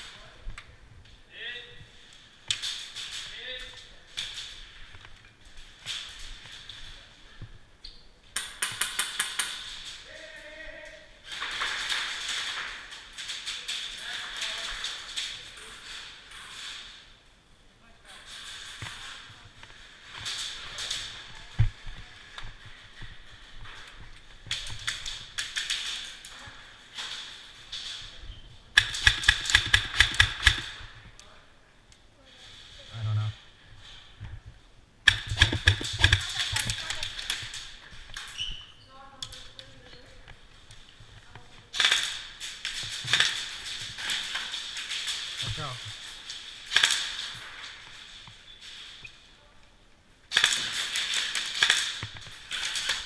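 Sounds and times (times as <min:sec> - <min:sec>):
noise: 0:00.0 - 0:53.0
airsoft gun shots: 0:28.8 - 0:30.8, 0:35.1 - 0:36.8
airsoft guns firing: 0:28.8 - 0:31.0, 0:35.0 - 0:37.7, 0:41.8 - 0:45.1, 0:46.6 - 0:47.4, 0:50.3 - 0:53.0
person speaking: 0:35.1 - 0:37.3.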